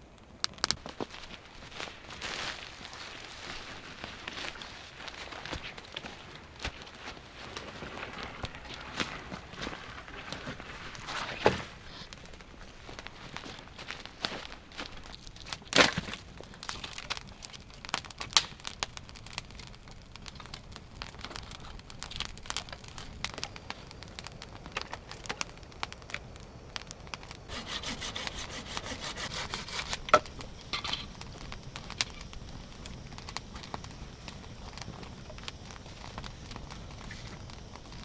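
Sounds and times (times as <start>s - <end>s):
hand saw cutting wood: 27.5s - 30.1s.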